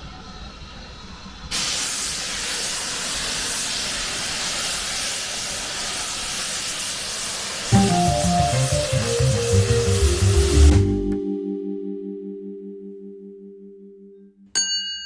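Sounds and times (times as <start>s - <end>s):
locomotive steam hissing: 0.0s - 10.7s.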